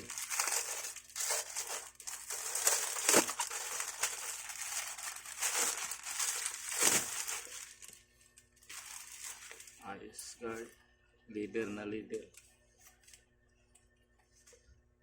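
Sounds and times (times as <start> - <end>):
bubble wrap crinkling: 0.0 - 9.8.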